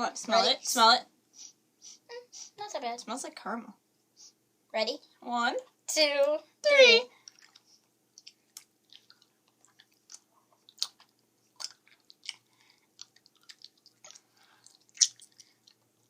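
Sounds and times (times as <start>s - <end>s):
chewing hard candy: 7.2s - 16.0s.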